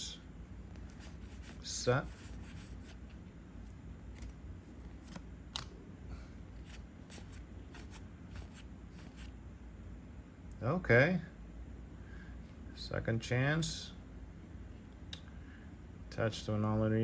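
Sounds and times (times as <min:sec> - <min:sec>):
cards being flipped through: 0:00.7 - 0:05.8, 0:06.5 - 0:09.3.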